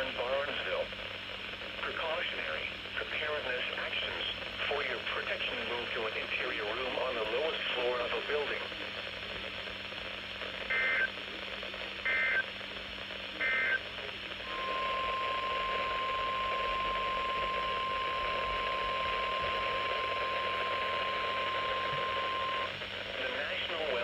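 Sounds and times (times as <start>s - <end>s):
radio hiss: 0.0s - 24.0s
digital data bursts: 13.4s - 13.8s.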